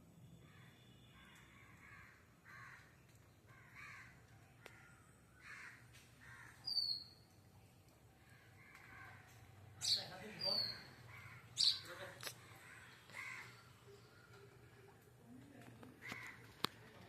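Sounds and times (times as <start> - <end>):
birds making harsh calls: 8.2 - 15.0
sharp high bird chirp: 11.6 - 11.9.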